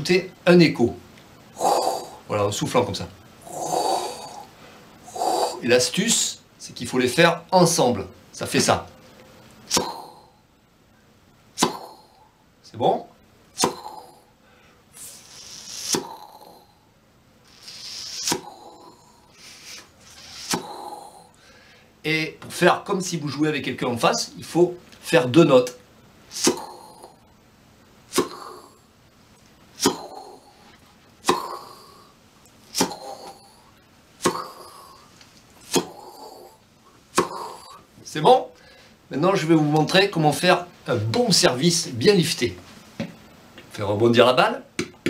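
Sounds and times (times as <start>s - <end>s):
lip pops: 9.7s - 10.2s, 11.6s - 12.0s, 13.6s - 14.1s, 15.0s - 16.4s, 17.5s - 18.7s, 19.3s - 20.8s, 26.3s - 27.2s, 28.1s - 28.6s, 29.4s - 30.3s, 31.2s - 31.8s, 32.5s - 33.5s, 34.2s - 36.3s, 37.1s - 37.8s.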